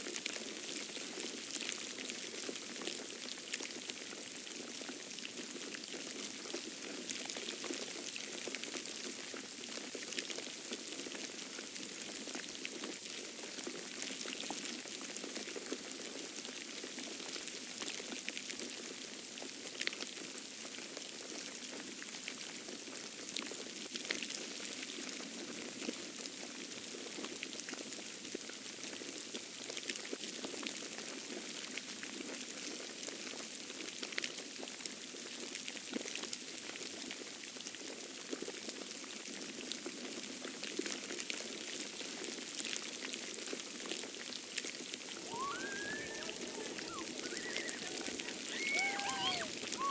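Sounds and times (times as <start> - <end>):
wet snow falling: 44.7 - 49.9.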